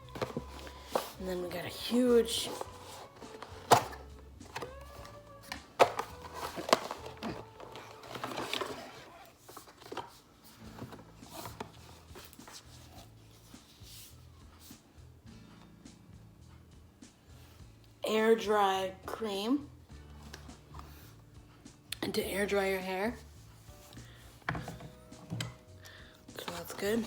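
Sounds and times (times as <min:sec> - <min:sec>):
packaging rustling: 0:00.0 - 0:01.3, 0:02.2 - 0:13.1.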